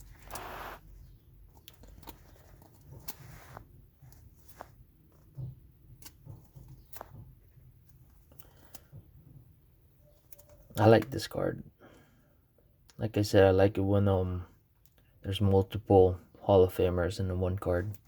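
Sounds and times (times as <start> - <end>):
trading cards rustling and clicking: 0.0 - 9.1.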